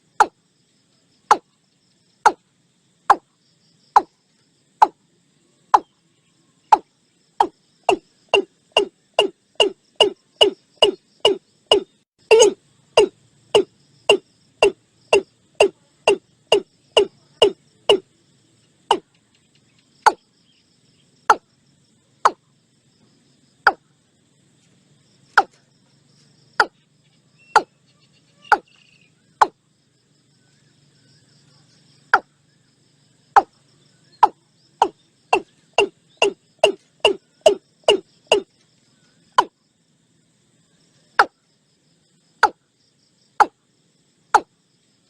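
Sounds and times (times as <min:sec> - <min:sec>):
watercock calling: 0:07.4 - 0:18.0, 0:27.5 - 0:27.7, 0:28.4 - 0:28.7.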